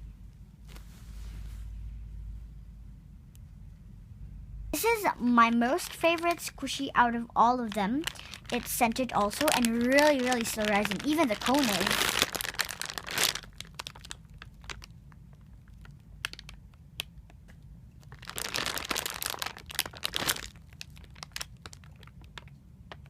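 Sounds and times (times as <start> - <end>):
plastic packaging crinkling: 4.8 - 16.6, 18.0 - 23.0.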